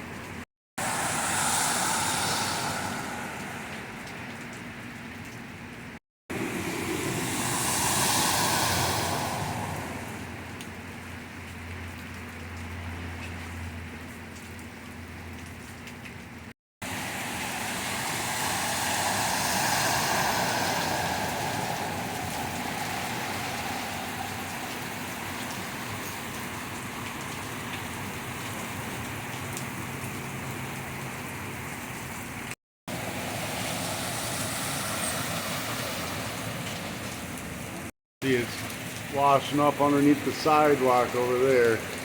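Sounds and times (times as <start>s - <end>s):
steady rain: 0.0s - 42.0s
car splashing through water: 0.8s - 4.7s, 6.3s - 11.8s, 16.8s - 29.2s, 32.9s - 42.0s.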